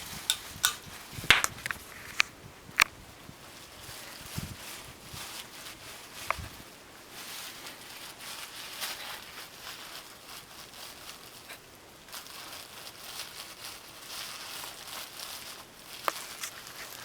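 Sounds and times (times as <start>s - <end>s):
bubble wrap popping: 0.3s - 1.7s, 7.2s - 17.0s
bubble wrap crinkling: 0.3s - 2.1s, 3.2s - 17.0s.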